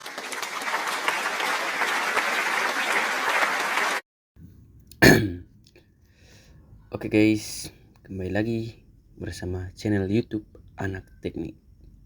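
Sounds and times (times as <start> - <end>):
crowd applauding: 0.0 - 4.0.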